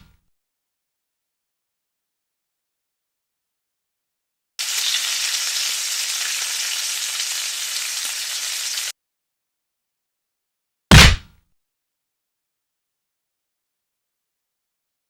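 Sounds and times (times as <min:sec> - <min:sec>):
sizzling hiss: 0:04.6 - 0:08.9
loud deep thud: 0:10.9 - 0:11.3.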